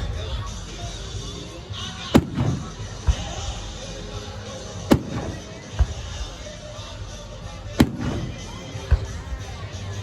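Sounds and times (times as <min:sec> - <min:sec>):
low fireworks booms: 0:00.0 - 0:06.5, 0:07.7 - 0:10.0
music: 0:00.0 - 0:10.0
fireworks cracking: 0:01.7 - 0:06.4, 0:07.7 - 0:10.0.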